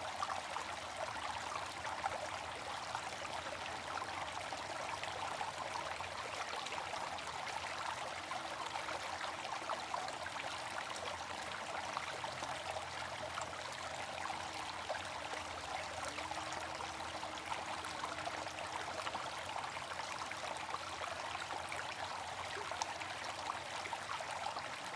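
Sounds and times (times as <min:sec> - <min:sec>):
running water trickling: 0:00.0 - 0:24.9.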